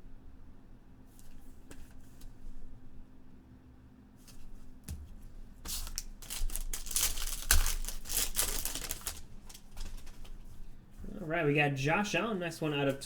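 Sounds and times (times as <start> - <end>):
packaging tearing and crinkling: 5.7 - 10.2.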